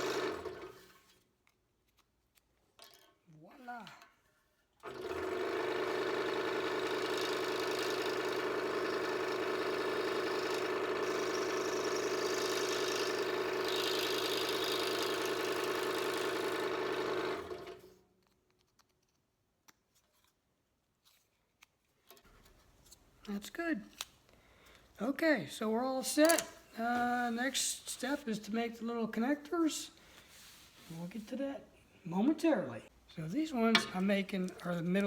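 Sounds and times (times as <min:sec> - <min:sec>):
electric power tool running: 0:00.0 - 0:00.9, 0:04.8 - 0:18.0.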